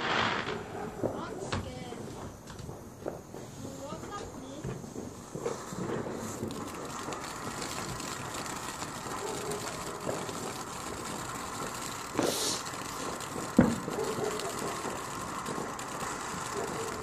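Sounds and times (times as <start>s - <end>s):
outdoor background noise: 0.0s - 17.0s
short hiss: 3.4s - 17.0s.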